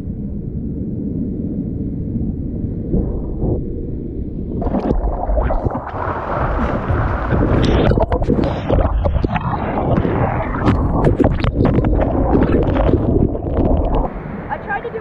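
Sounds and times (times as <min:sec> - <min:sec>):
wind rumble on microphone: 0:00.0 - 0:15.0
surf rushing and splashing: 0:04.6 - 0:15.0.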